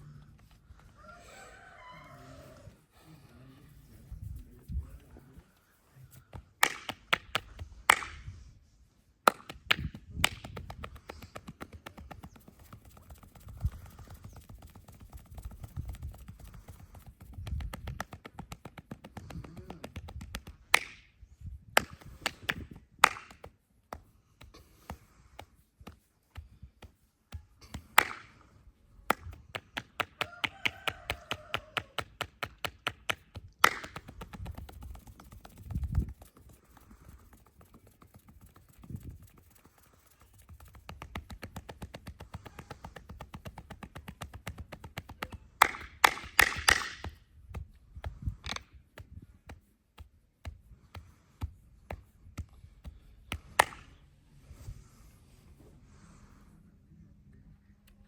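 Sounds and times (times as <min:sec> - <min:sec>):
hands slapping and tapping skin: 0:06.2 - 0:08.3, 0:09.2 - 0:21.1, 0:21.7 - 0:54.0
loud single slaps: 0:06.6 - 0:08.3, 0:19.2 - 0:21.1, 0:21.8 - 0:23.5, 0:27.6 - 0:28.4, 0:31.1 - 0:34.1, 0:45.6 - 0:47.2, 0:53.3 - 0:53.9.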